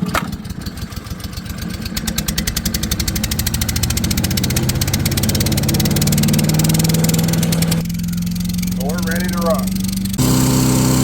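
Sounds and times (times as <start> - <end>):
small gasoline engine running: 0.0 - 11.0.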